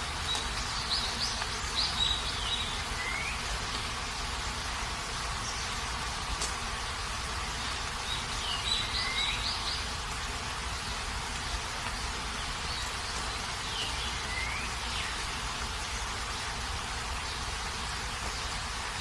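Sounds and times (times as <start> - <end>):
rain falling: 0.0 - 19.0
bird calling: 0.3 - 3.6, 12.6 - 15.4.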